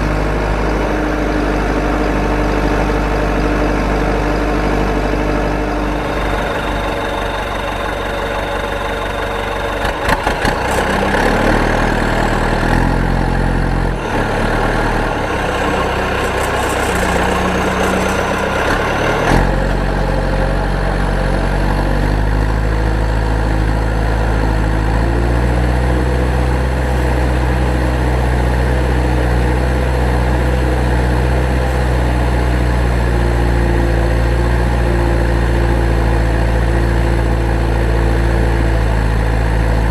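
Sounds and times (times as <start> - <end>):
engine-like idling drone: 0.0 - 39.9.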